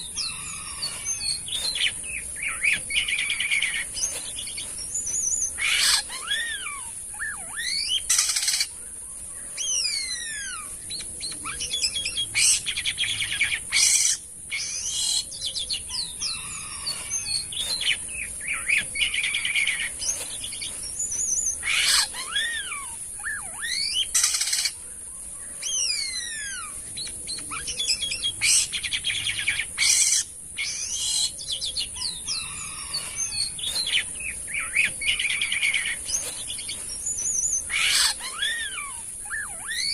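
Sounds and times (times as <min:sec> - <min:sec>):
starling whistling song: 0:00.0 - 0:08.7, 0:09.5 - 0:24.8, 0:25.5 - 0:39.9
harsh rasping bird calls: 0:00.0 - 0:39.9.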